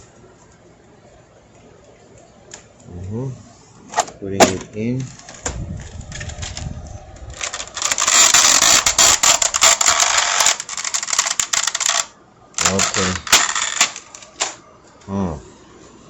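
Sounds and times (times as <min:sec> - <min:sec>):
plastic toy gun clicking and rattling: 0:07.4 - 0:14.6.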